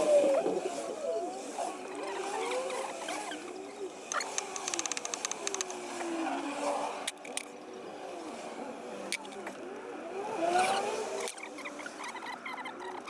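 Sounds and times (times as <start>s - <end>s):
ratchet clicks: 4.1s - 5.8s
wavering squeaky tones: 11.3s - 13.0s.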